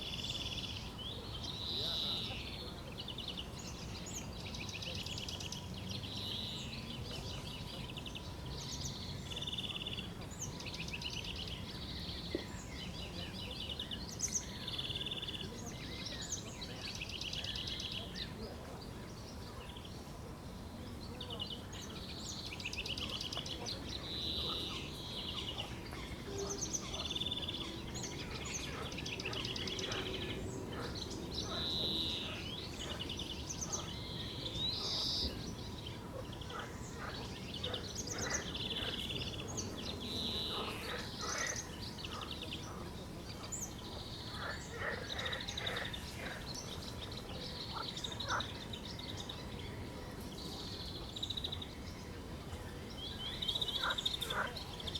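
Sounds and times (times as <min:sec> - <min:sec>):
outdoor background hiss: 0:00.0 - 0:54.9
bird chattering song: 0:21.3 - 0:52.1, 0:52.8 - 0:54.9.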